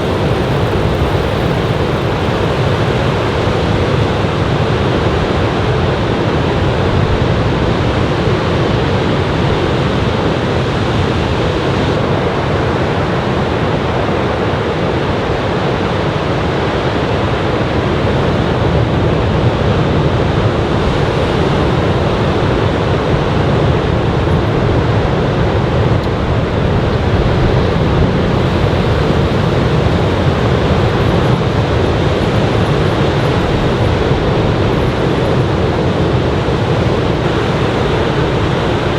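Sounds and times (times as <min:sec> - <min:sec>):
ocean waves breaking on beach: 0:00.0 - 0:06.1, 0:20.4 - 0:38.9
wind on microphone: 0:00.0 - 0:15.9, 0:17.5 - 0:38.9.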